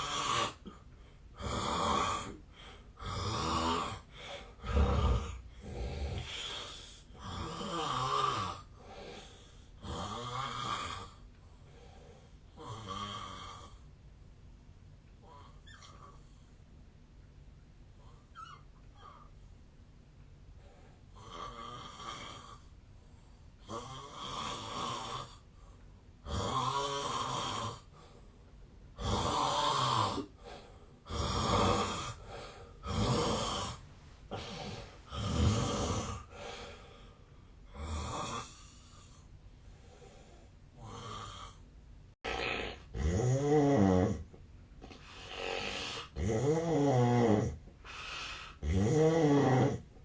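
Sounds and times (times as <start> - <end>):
man snoring heavily: 0.0 - 0.7, 1.4 - 2.4, 3.0 - 11.2, 12.6 - 13.8, 21.2 - 22.6, 23.6 - 25.4, 26.2 - 27.9, 29.0 - 30.4, 31.0 - 36.9, 37.7 - 39.0, 40.8 - 41.6, 42.2 - 44.2, 45.1 - 49.9.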